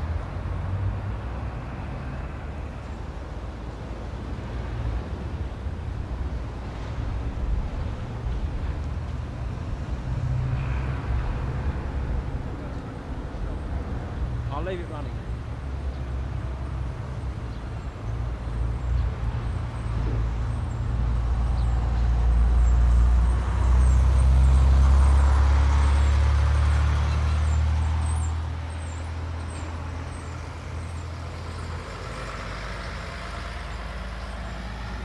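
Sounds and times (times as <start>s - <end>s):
diesel engine droning: 8.4s - 35.0s.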